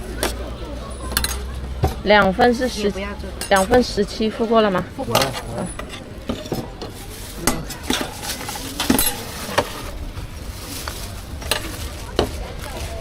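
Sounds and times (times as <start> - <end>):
metal utensils clinking on pans: 0.0 - 13.0
steady low rumble: 9.3 - 13.0.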